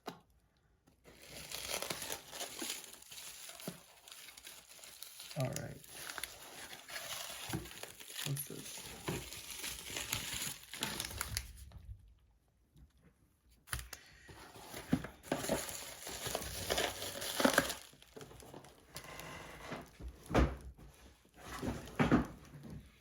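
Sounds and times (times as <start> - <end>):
packaging crinkling and rustling: 1.0 - 11.8, 13.7 - 20.7.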